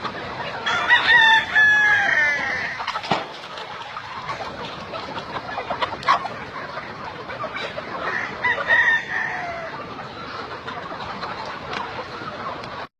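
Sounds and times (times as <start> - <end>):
chickens clucking: 0.0 - 12.9
rooster crowing: 0.6 - 2.8.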